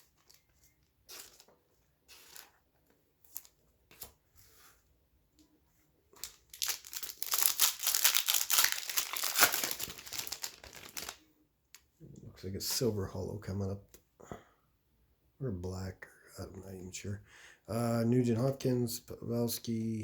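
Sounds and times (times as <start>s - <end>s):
foil wrapper tearing and crinkling: 6.2s - 11.2s.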